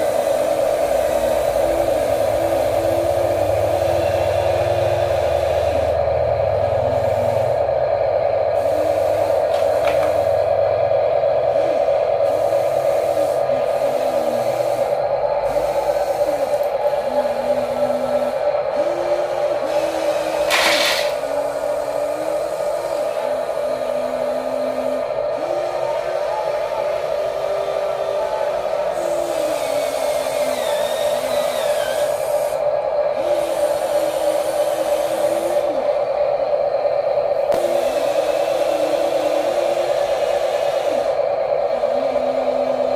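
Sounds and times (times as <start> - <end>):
steady high hum: 0.0 - 42.9
small electric motors whirring: 11.4 - 32.6.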